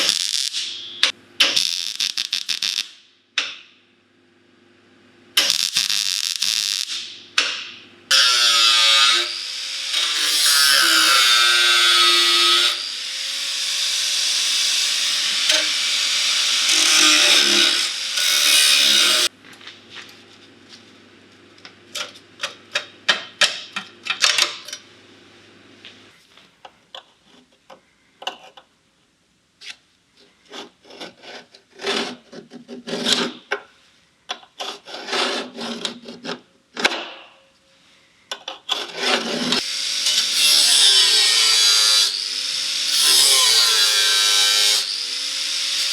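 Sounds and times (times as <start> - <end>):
crackling bursts: 1.5 - 3.0, 5.4 - 7.2
power tool on sheet metal: 8.1 - 19.3, 39.3 - 45.9.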